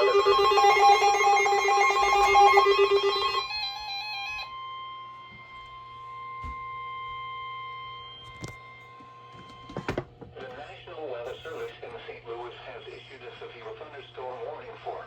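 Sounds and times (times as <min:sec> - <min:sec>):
steady alarm tone: 0:00.0 - 0:09.8.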